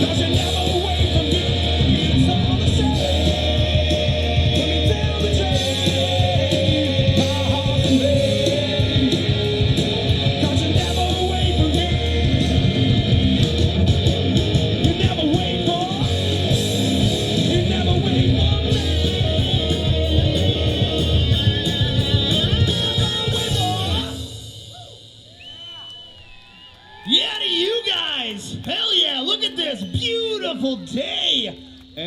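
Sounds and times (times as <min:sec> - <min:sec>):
live rock band with guitar: 0:00.0 - 0:25.3.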